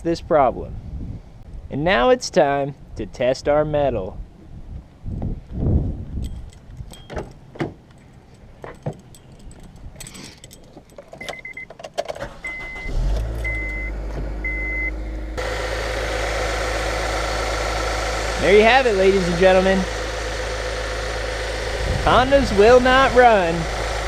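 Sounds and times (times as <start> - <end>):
car engine starting and idling: 11.3 - 24.0.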